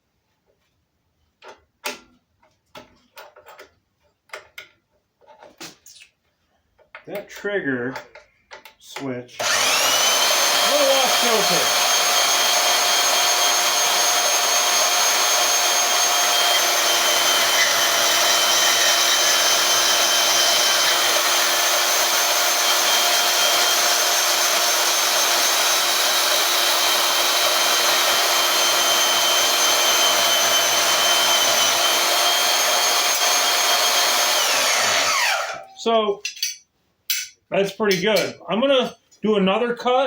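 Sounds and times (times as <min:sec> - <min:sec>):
band saw cutting metal: 0:09.4 - 0:35.8.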